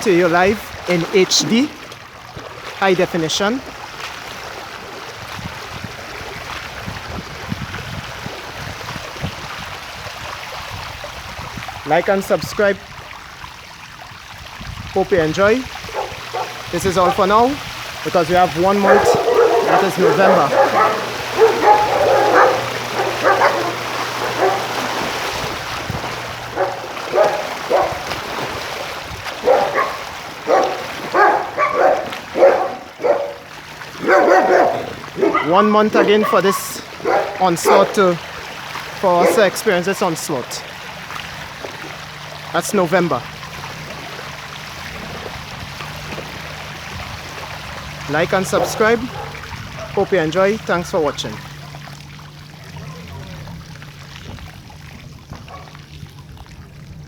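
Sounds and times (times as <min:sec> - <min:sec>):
floodwater rushing: 0:00.0 - 0:57.0
dogs barking: 0:15.8 - 0:40.5, 0:47.9 - 0:52.0, 0:55.4 - 0:55.9.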